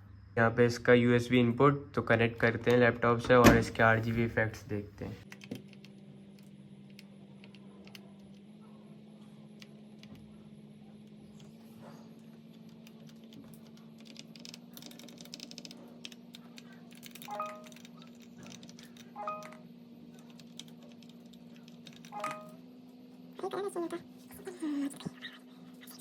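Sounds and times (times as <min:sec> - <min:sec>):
low electrical hum: 0:00.0 - 0:26.0
keyboard keys clicking: 0:12.8 - 0:22.6
short electronic beeps: 0:22.2 - 0:22.6.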